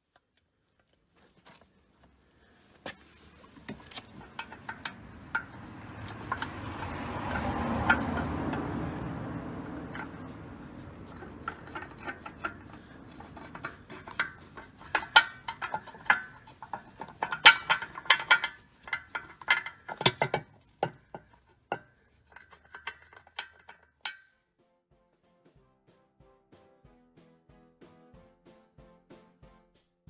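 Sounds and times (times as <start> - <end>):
metallic clinks and taps: 2.9 - 24.3.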